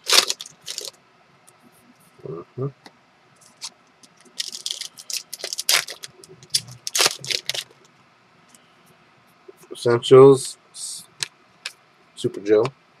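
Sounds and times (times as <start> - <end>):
trading cards rustling: 0.0 - 0.9, 3.4 - 7.9.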